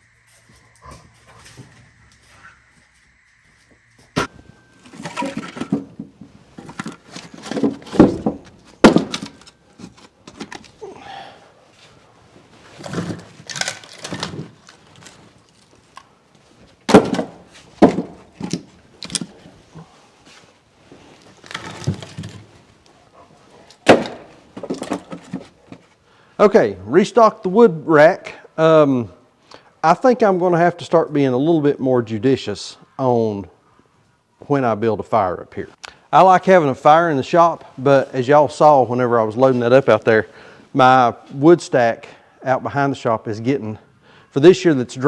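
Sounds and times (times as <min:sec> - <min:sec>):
firewood thunking and knocking: 0:04.2 - 0:10.6, 0:16.9 - 0:19.3, 0:23.8 - 0:25.8.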